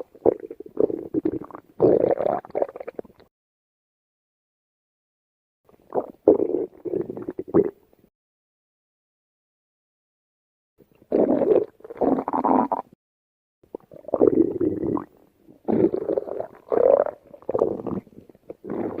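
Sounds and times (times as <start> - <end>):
stomach growling: 0.0 - 3.3, 5.7 - 7.8, 11.0 - 13.0, 13.7 - 19.0.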